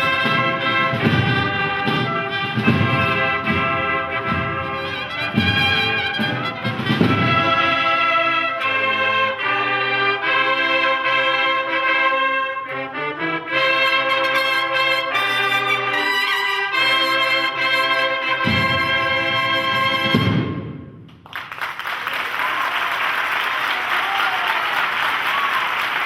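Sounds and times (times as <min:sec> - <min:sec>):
cornet and drum band march: 0:00.0 - 0:12.3, 0:13.0 - 0:21.0.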